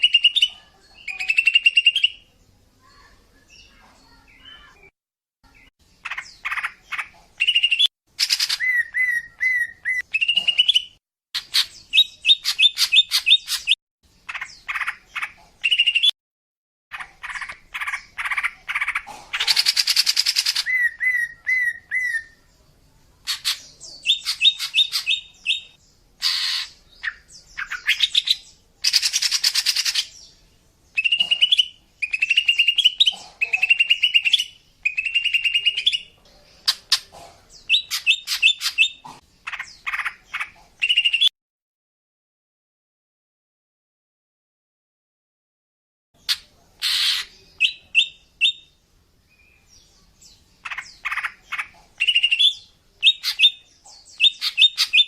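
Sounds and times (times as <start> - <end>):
bird harsh chattering: 6.0 - 16.1, 16.9 - 22.4, 23.2 - 30.2, 30.9 - 41.3, 46.2 - 48.7, 50.6 - 55.0
bird chirping and whistling: 7.4 - 13.8, 15.6 - 16.1, 19.8 - 22.4, 31.0 - 33.1, 33.7 - 36.0, 40.8 - 41.3, 46.8 - 48.7, 52.0 - 55.0.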